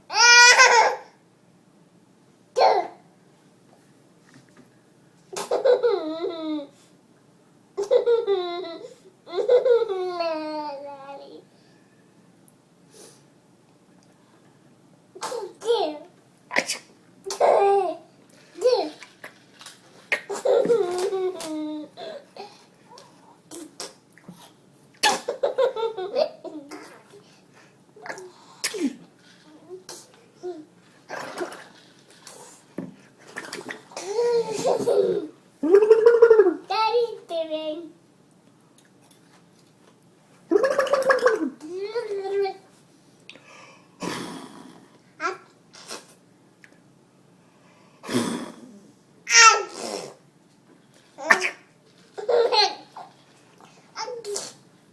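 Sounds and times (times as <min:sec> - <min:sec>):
child mock sneezing: 0:15.2 - 0:15.7, 0:16.5 - 0:17.6, 0:28.0 - 0:29.0, 0:49.3 - 0:50.2, 0:54.0 - 0:54.6
soft child vocal noises: 0:28.0 - 0:31.7.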